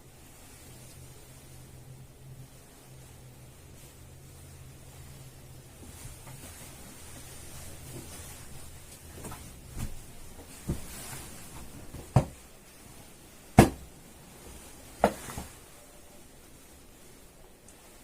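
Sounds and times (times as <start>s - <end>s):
objects knocking and clunking: 9.2s - 12.4s.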